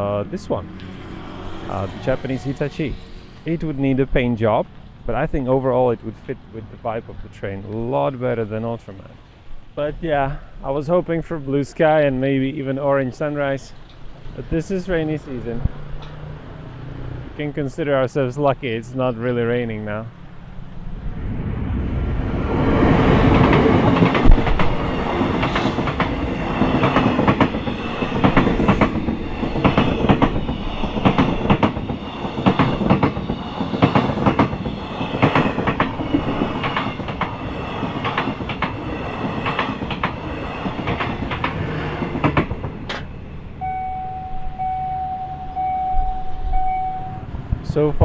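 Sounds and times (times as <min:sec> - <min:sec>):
train wheels clicking over rail joints: 0:23.2 - 0:43.2
steady tone: 0:43.1 - 0:47.4.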